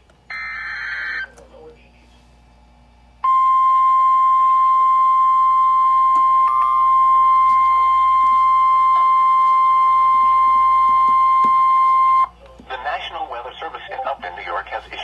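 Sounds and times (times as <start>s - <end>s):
steady warning alarm tone: 0.3s - 1.4s, 3.2s - 12.4s.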